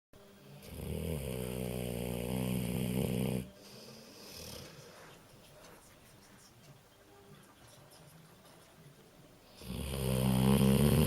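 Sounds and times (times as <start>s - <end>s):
dog snoring: 0.5s - 4.9s, 9.5s - 11.0s.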